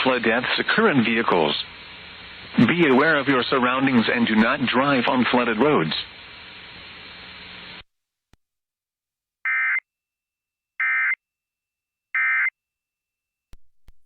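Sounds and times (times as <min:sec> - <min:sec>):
radio hiss: 0:00.0 - 0:07.8
digital data squawk bursts: 0:09.5 - 0:09.8, 0:12.2 - 0:12.5.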